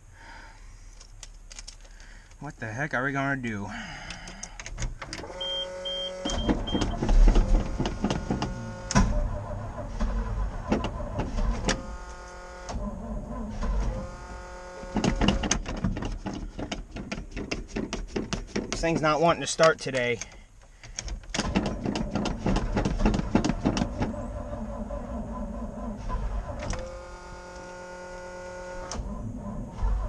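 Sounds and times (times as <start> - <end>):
starter cranking engine: 20.1 - 24.2.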